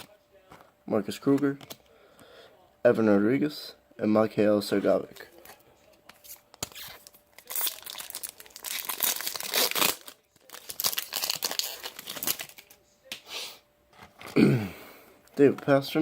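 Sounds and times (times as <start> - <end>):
plastic wrapper crinkling and tearing: 5.1 - 12.8.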